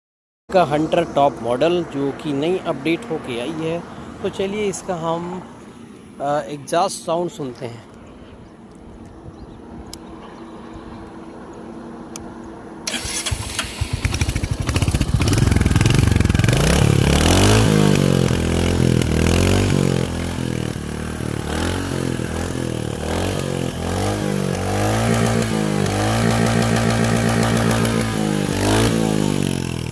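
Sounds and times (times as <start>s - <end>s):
motorcycle engine starting and idling: 12.8s - 29.9s
motorcycle engine revving: 12.9s - 29.9s.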